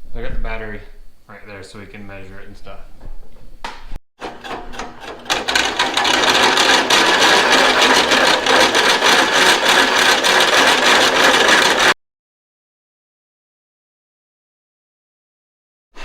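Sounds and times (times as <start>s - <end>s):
power tool cutting steel: 4.2s - 12.0s.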